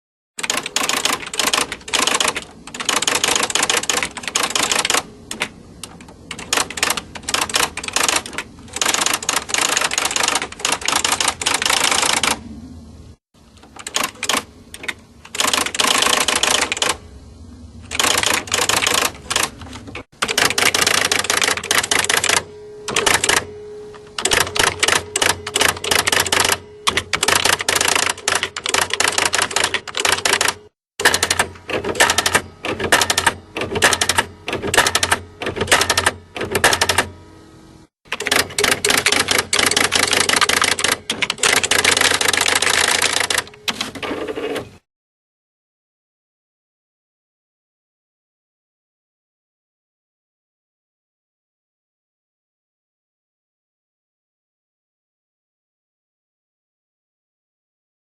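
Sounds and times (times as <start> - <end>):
typewriter keys clicking: 0.4 - 12.4, 13.6 - 17.0, 17.9 - 23.5, 24.1 - 37.1, 38.1 - 44.6.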